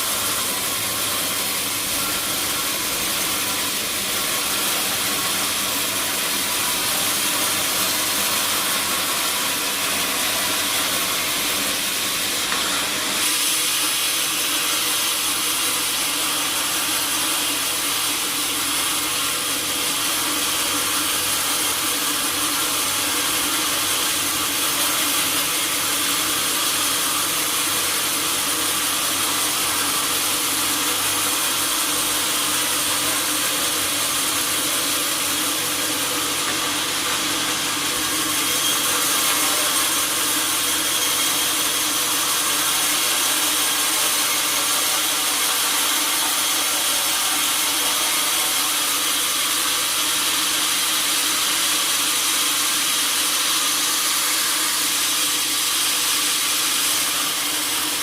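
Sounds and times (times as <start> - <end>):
sawmill saw cutting log: 0.0 - 58.0.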